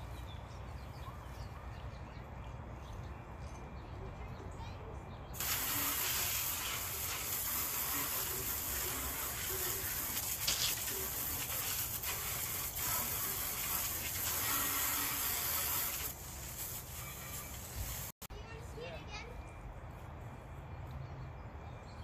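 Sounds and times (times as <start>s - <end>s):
water spraying hard: 5.4s - 18.2s.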